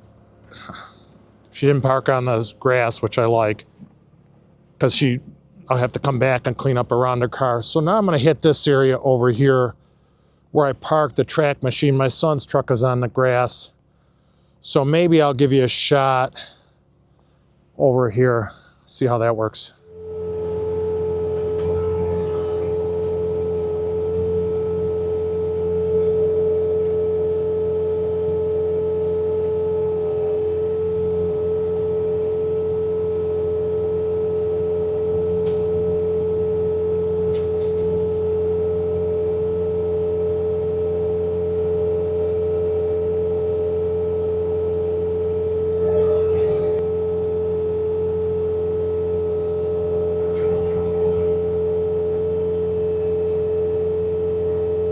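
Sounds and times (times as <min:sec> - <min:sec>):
snowblower whine: 0:00.0 - 0:03.5, 0:19.8 - 0:54.9
low engine drone: 0:00.0 - 0:54.9.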